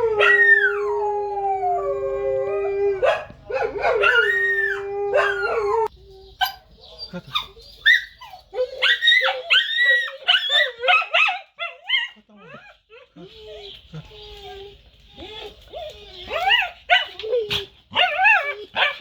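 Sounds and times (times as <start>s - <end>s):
dog howling: 0.0s - 5.9s
dog yelping and whining: 2.6s - 19.0s.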